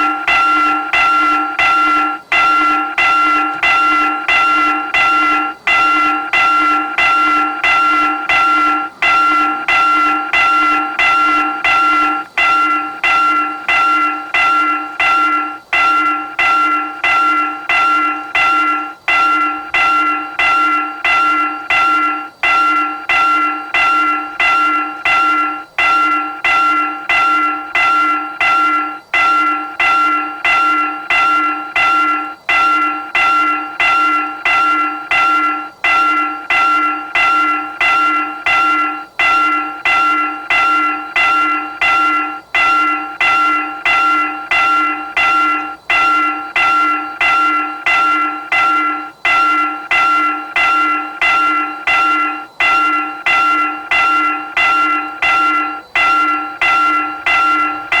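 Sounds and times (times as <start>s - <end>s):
railroad crossing bell ringing: 0.0s - 58.0s.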